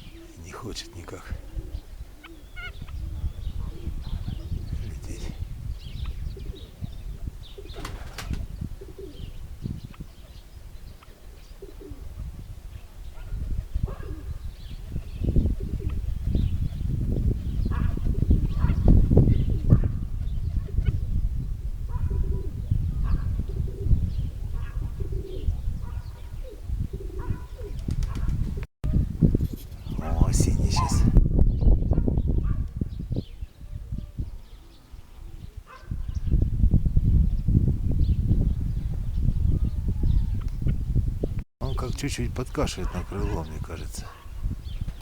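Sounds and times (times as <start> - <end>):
pigeons cooing: 0.0 - 5.2, 5.9 - 10.4, 11.0 - 21.0, 21.9 - 28.4
small birds chirping: 0.0 - 21.4, 29.4 - 36.6, 37.2 - 45.0.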